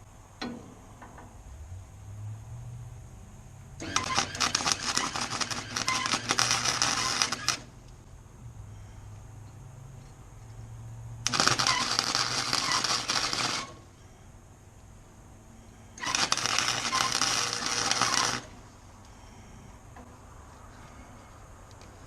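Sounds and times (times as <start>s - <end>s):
low electrical hum of welder: 0.0s - 22.0s
arc welding crackling and sizzling: 3.8s - 8.1s, 11.2s - 14.0s, 16.0s - 18.8s.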